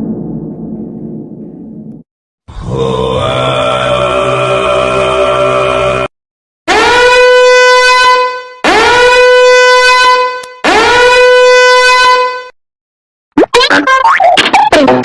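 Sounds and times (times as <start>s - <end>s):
horn blasts: 6.7s - 12.6s.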